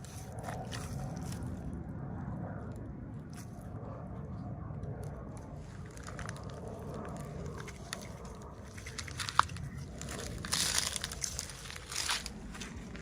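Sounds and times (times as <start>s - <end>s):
packaging crinkling: 5.7s - 13.0s
packaging rustle: 5.7s - 13.0s.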